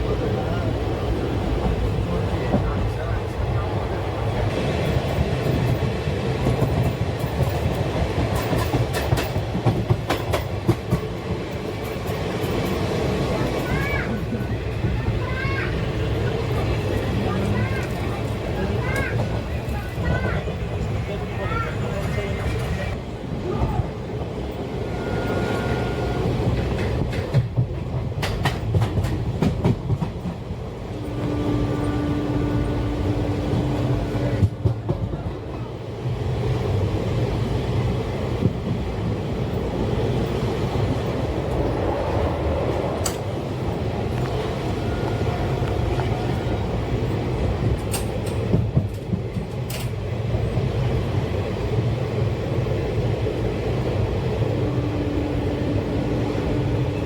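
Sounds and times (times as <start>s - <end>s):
train rolling rumble: 0.0s - 57.0s
wheels clicking over rail joints: 26.5s - 30.4s, 44.1s - 50.1s.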